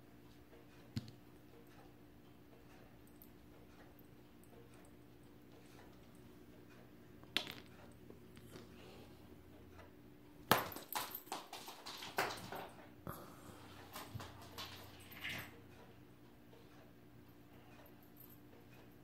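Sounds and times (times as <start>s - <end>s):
low steady hum: 0.0s - 19.0s
cat knocking and rattling things: 10.4s - 12.8s, 13.8s - 15.5s.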